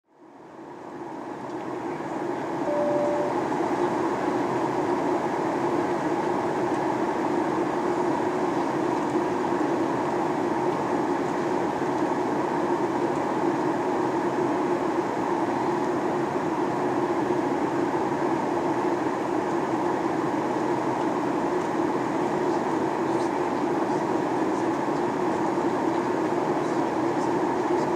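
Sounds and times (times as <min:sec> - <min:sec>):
airliner cabin drone: 0:01.2 - 0:05.2.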